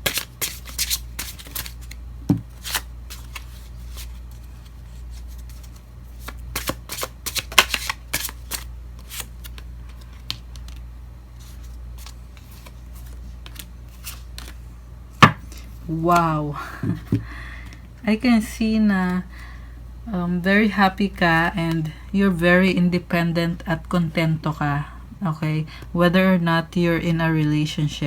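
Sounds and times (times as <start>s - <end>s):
cards shuffling by hand: 0.0s - 14.6s.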